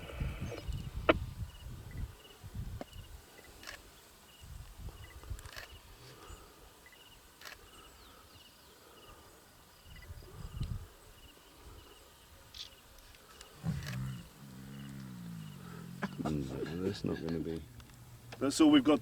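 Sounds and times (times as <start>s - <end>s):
lion growling: 13.5s - 18.4s.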